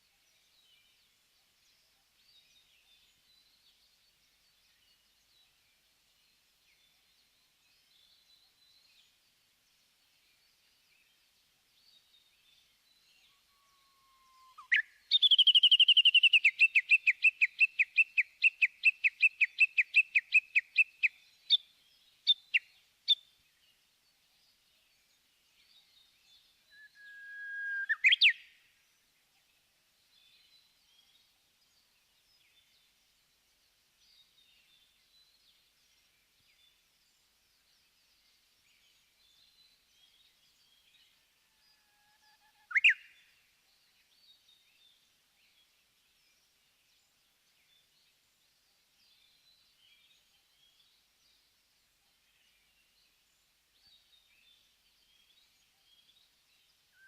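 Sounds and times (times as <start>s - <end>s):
bird singing: 0.0s - 57.0s.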